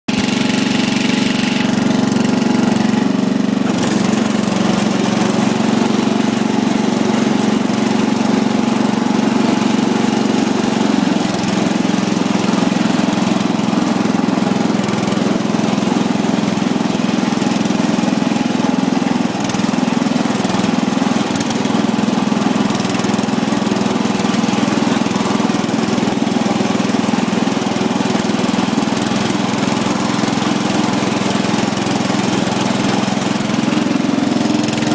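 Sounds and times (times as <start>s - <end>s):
riding lawn mower engine: 0.1s - 34.9s.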